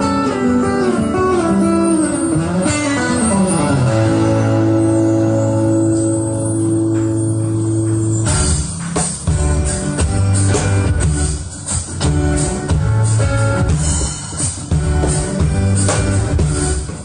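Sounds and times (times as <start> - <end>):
instrumental music with drum beat: 0.0 - 17.0.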